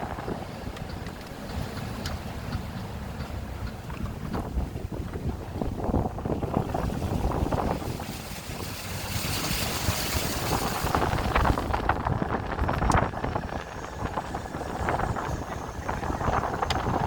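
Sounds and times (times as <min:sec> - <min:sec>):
wind buffeting microphone: 0:00.0 - 0:17.0
low rumble: 0:01.6 - 0:17.0.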